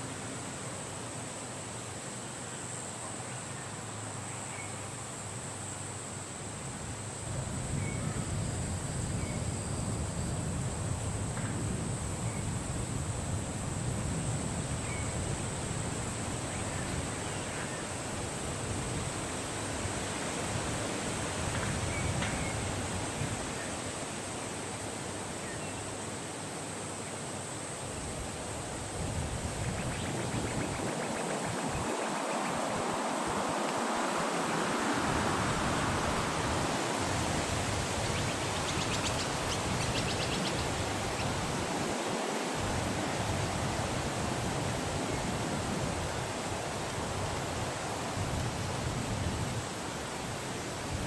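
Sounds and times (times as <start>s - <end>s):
steady high-pitched hiss: 0.0s - 51.0s
wind blowing: 27.8s - 51.0s.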